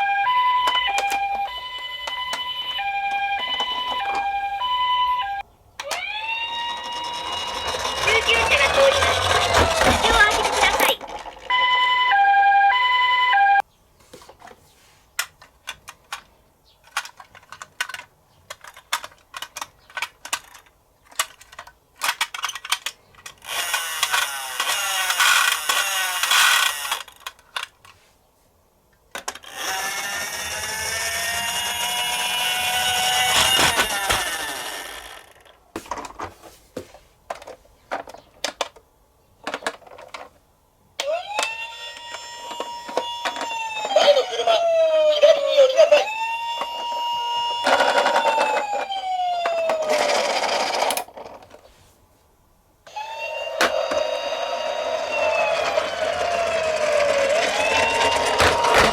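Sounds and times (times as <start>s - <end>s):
toy cars rolling and rattling: 0.0s - 12.2s, 15.2s - 28.0s, 29.1s - 36.4s, 39.4s - 40.4s, 41.0s - 51.7s, 52.9s - 58.9s
toy ambulance siren: 0.0s - 13.6s, 23.4s - 27.1s, 29.4s - 35.3s, 41.0s - 51.0s, 52.9s - 58.9s
toy police car siren: 0.0s - 13.6s, 23.4s - 27.1s, 29.4s - 35.3s, 41.0s - 51.1s, 52.9s - 58.9s.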